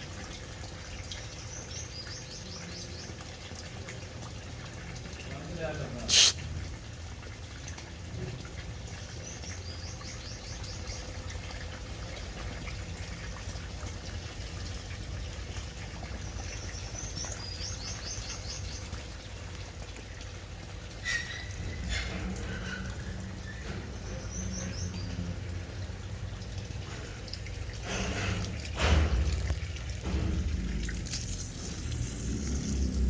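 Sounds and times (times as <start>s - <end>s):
water rushing in a pipe: 0.0s - 33.0s.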